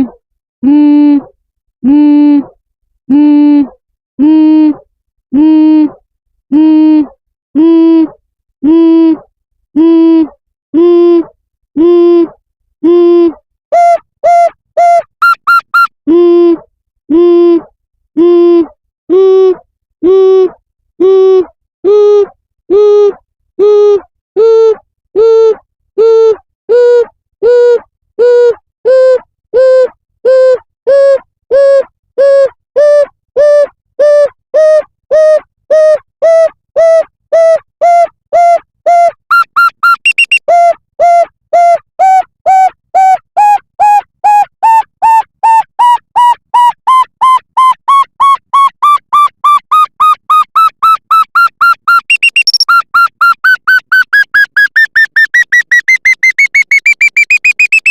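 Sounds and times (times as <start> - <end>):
electronic beeps rising in pitch: 39.3 - 40.4, 51.9 - 57.9.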